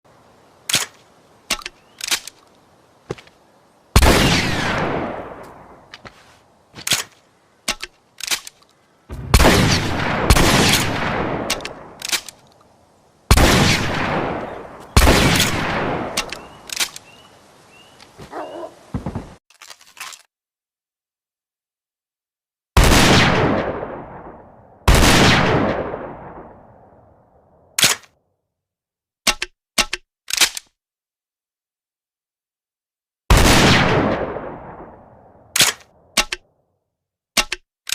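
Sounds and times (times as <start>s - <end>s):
gun mechanism clicks: 0.7s - 2.5s, 6.8s - 8.7s, 11.5s - 12.7s, 16.2s - 17.1s, 29.3s - 30.7s, 35.6s - 36.4s, 37.4s - 37.9s
shotgun blasts echoing: 9.1s - 12.0s, 13.3s - 16.6s.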